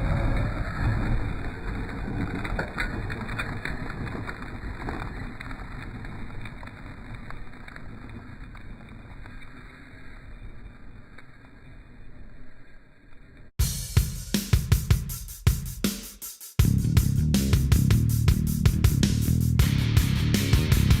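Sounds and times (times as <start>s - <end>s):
rc car running: 0.0s - 13.4s.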